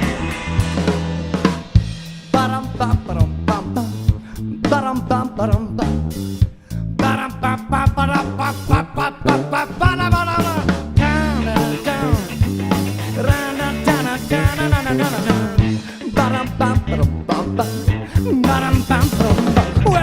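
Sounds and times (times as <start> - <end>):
lead guitar bending notes: 0.0 - 2.0
blues-rock band playing: 0.0 - 20.0.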